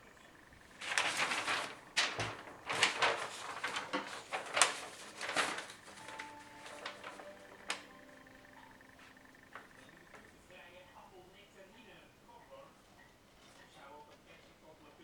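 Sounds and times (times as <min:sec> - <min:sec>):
scraping and rustling of parts: 0:00.3 - 0:07.8.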